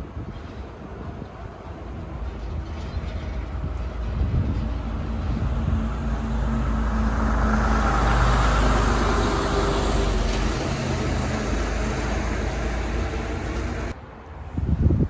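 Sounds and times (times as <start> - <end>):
diesel engine idling: 5.8 - 14.0.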